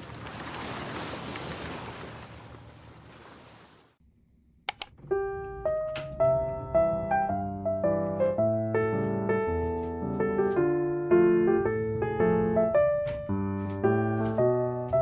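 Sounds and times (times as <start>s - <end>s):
sharp clicks: 4.7s - 5.0s
light piano music: 4.9s - 15.0s.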